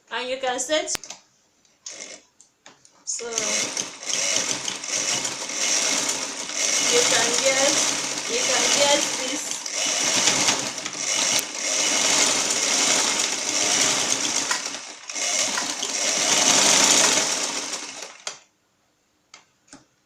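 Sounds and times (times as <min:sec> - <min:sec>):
sewing machine stitching: 0:03.2 - 0:18.4.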